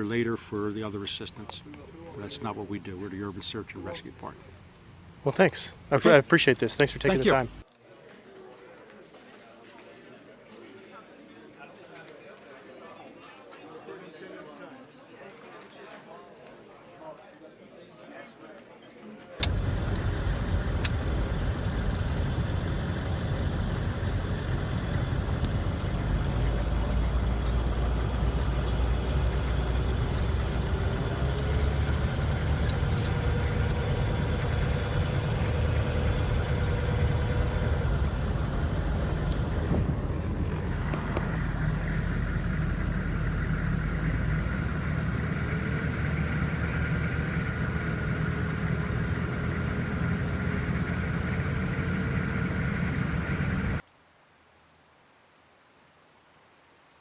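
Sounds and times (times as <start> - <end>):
heavy vehicle engine droning: 19.4 - 53.8.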